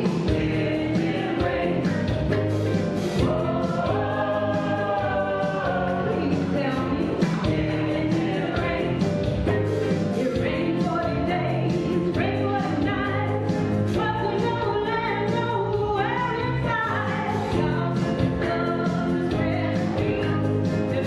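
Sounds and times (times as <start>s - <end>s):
gospel choir singing: 0.0s - 15.3s, 15.9s - 21.0s
instrumental accompaniment: 0.0s - 21.0s
steady drum beat: 0.0s - 21.0s.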